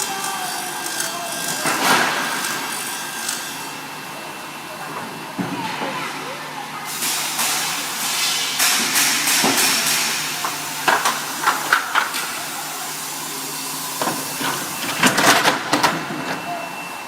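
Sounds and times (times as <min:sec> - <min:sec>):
steady machine hiss: 0:06.7 - 0:16.1.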